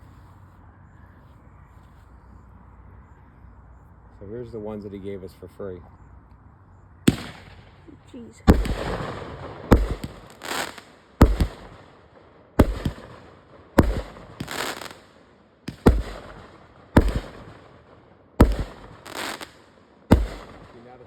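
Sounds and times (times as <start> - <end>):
firework bangs: 7.1 - 7.8, 8.5 - 21.0
firework hissing burst: 8.5 - 11.9, 12.6 - 17.8, 18.4 - 20.8.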